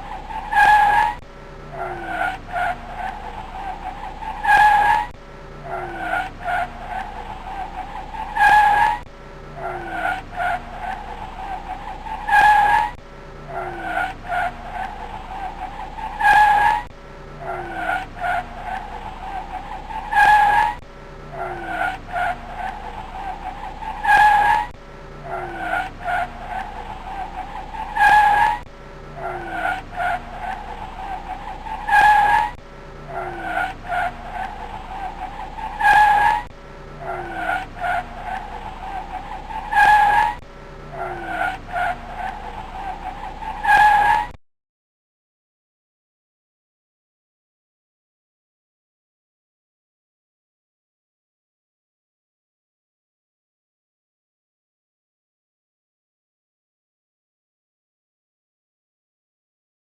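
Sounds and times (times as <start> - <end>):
car tyres squealing: 0.0 - 44.4.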